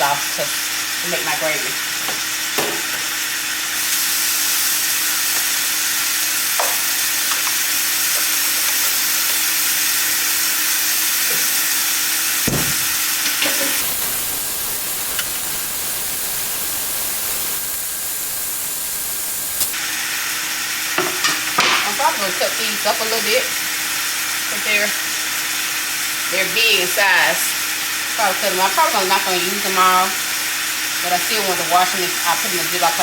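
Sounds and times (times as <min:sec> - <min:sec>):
meat sizzling in a frying pan: 0:00.0 - 0:33.0
knock: 0:12.5 - 0:12.8.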